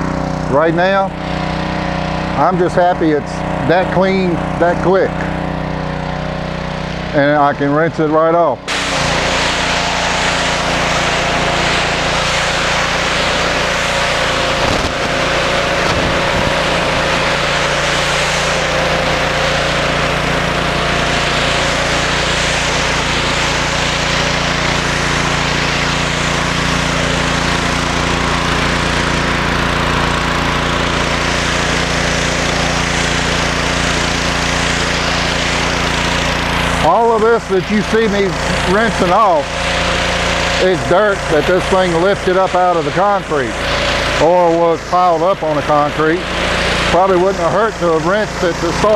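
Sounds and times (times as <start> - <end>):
pressure washer engine running: 0.0 - 48.9
high-pressure water spray hissing: 8.6 - 48.9.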